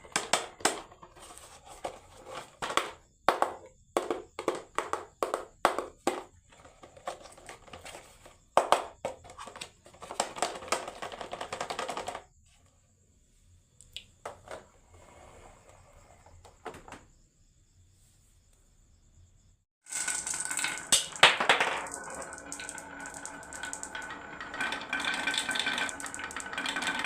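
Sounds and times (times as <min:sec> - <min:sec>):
marbles rolling on wood: 0:00.0 - 0:12.3, 0:19.8 - 0:27.0
marbles clacking: 0:19.8 - 0:27.0
marble clicks: 0:19.9 - 0:27.0.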